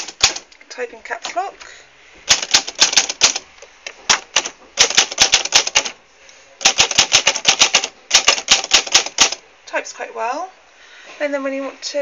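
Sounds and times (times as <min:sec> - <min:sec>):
manual typewriter keystrokes: 0:00.0 - 0:00.5, 0:02.3 - 0:06.0, 0:06.6 - 0:09.4.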